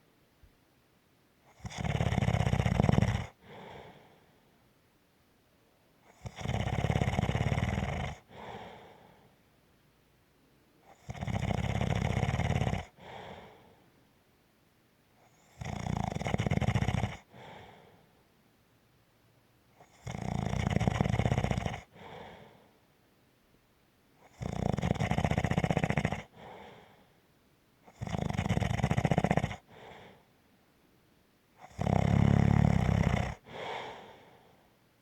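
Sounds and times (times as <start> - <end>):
loud snoring: 1.5 - 3.9, 6.1 - 8.9, 10.9 - 13.6, 15.3 - 17.8, 19.8 - 22.5, 24.2 - 26.9, 27.9 - 30.2, 31.6 - 34.2
quiet breath out: 3.3 - 4.7, 8.2 - 9.5, 12.9 - 14.0, 17.2 - 18.3, 21.8 - 22.9, 26.2 - 27.2, 29.6 - 30.4, 32.8 - 34.9.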